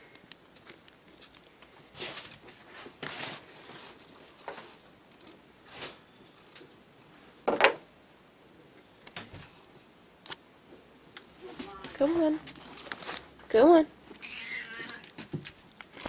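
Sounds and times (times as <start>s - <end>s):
rustling: 0.0s - 6.9s, 11.4s - 13.5s.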